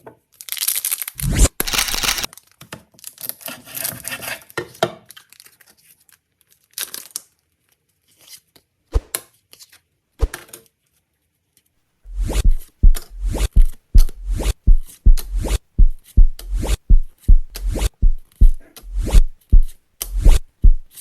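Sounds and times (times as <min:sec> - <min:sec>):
foil wrapper tearing and crinkling: 0:00.4 - 0:02.3.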